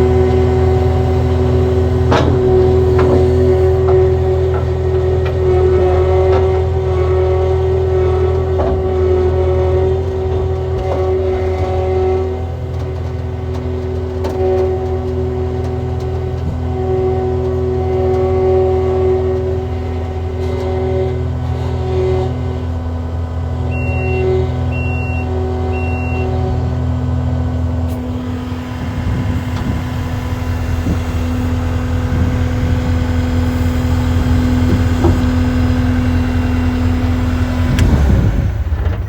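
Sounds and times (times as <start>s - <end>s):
engine running with deep hum: 0.0s - 39.0s.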